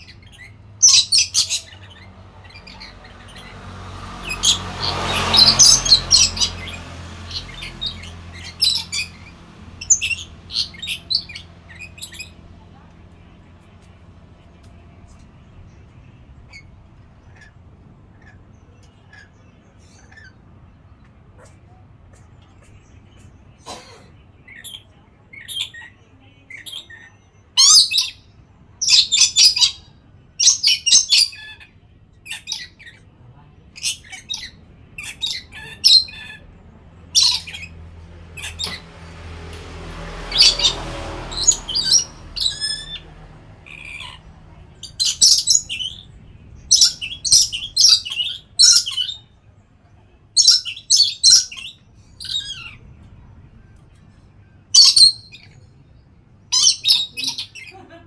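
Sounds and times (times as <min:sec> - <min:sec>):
parrot squawking: 0:00.0 - 0:12.4, 0:33.8 - 0:39.0, 0:40.3 - 0:46.1, 0:46.7 - 0:49.2, 0:50.4 - 0:52.8, 0:54.8 - 0:55.5, 0:56.5 - 0:57.8
dull rushing sound: 0:35.8 - 0:48.6.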